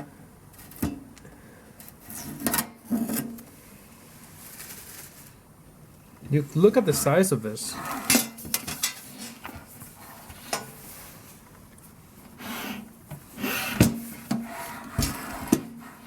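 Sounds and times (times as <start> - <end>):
plastic wrapping rubbing and scraping: 4.0 - 5.4.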